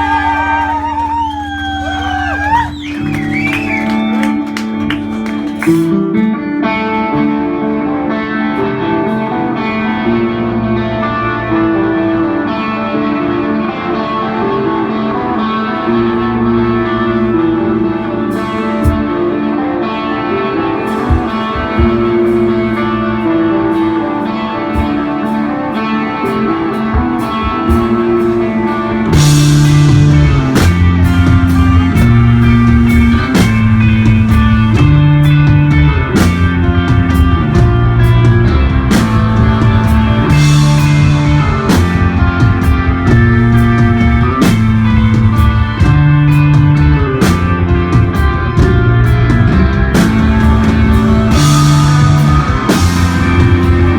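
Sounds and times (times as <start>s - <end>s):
drums: 0.0s - 7.6s, 15.9s - 53.9s
bass guitar: 0.0s - 53.9s
electric guitar: 0.0s - 53.9s.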